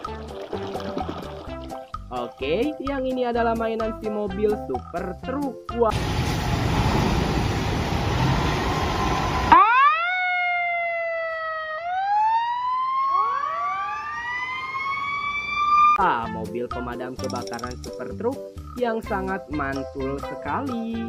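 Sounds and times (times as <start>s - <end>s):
fire engine siren wailing: 6.0s - 16.0s.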